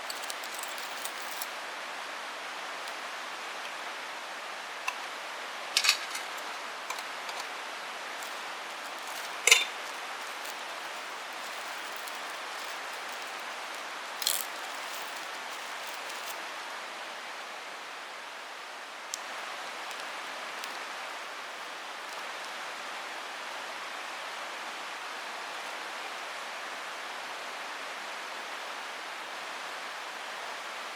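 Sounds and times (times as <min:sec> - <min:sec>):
steady outdoor hiss: 0:00.0 - 0:30.9
flint striking steel: 0:08.2 - 0:16.4.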